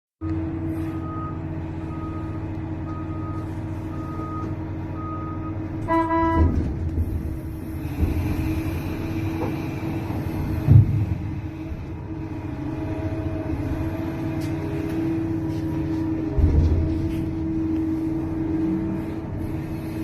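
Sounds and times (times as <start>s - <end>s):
excavator diesel engine running: 0.2s - 20.0s
horn blast: 5.8s - 6.6s
loud thud: 10.6s - 11.3s.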